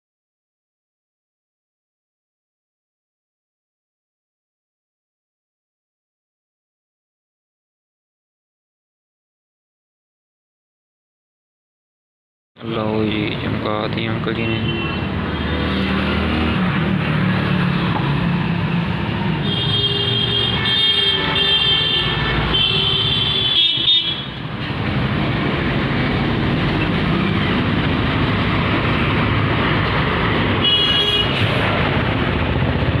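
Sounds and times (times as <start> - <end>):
road traffic rumble: 12.6 - 33.0
vehicle horn honking: 14.5 - 15.1, 19.4 - 24.4, 30.6 - 31.5.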